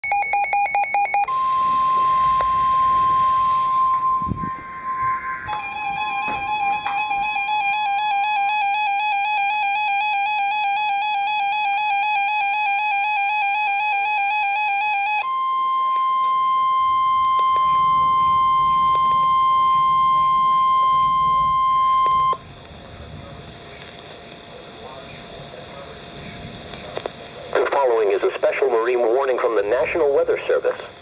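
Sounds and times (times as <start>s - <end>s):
steady warning alarm tone: 0.0s - 31.0s
two-tone alert attention signal: 0.1s - 8.9s
faint radio hiss: 17.0s - 31.0s.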